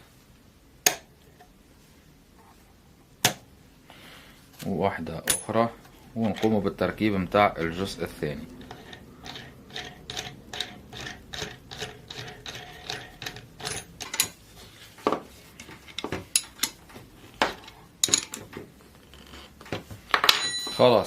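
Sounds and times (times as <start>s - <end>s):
nut tightening with metallic clicks: 8.6s - 14.4s.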